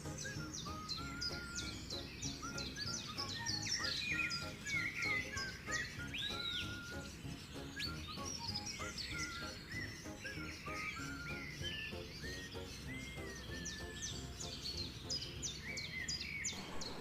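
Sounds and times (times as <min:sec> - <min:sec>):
music with steady beat: 0:00.0 - 0:10.2
arched bird whistle: 0:00.0 - 0:17.0
small birds chirping: 0:00.0 - 0:17.0.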